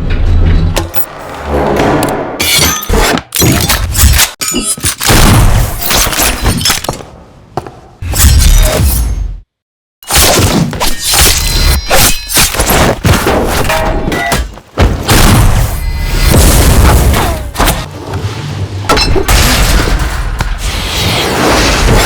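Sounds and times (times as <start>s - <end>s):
cinematic music: 0.0s - 3.9s
cinematic booms and heavy thuds: 14.8s - 17.9s.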